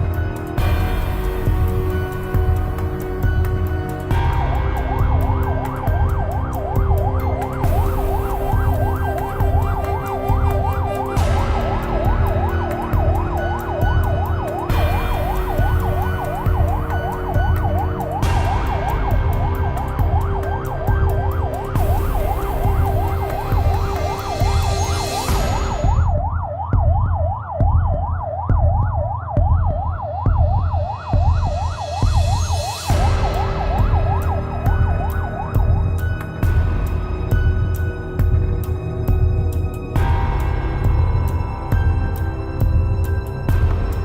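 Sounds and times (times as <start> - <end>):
heavy pulsing low rumble: 0.0 - 26.1
siren yelping: 4.1 - 36.6.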